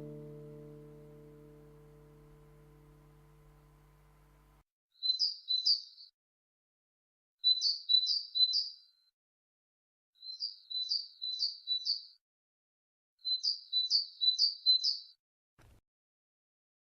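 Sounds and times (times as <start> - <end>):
songbird chirping: 0.0 - 6.2, 7.4 - 9.1, 10.2 - 12.2, 13.2 - 15.2.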